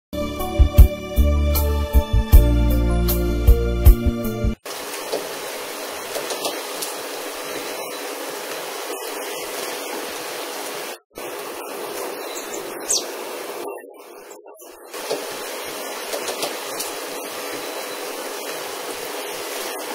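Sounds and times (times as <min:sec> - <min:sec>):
heavy rain falling: 0:04.6 - 0:13.7, 0:14.9 - 0:19.9.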